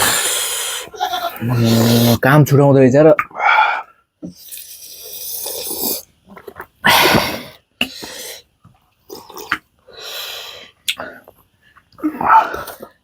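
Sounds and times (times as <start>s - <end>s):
person breathing hard: 0.0s - 0.9s, 6.8s - 8.5s, 9.9s - 11.3s.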